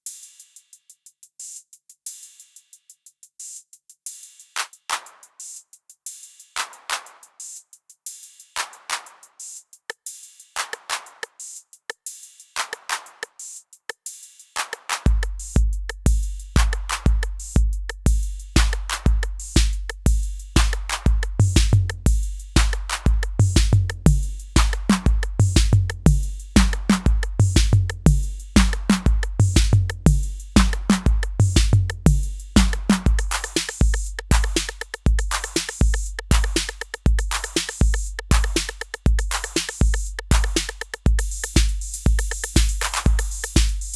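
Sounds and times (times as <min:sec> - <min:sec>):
busy hi-hats: 0:00.0 - 0:43.9
deep bass drum beat: 0:15.1 - 0:43.9.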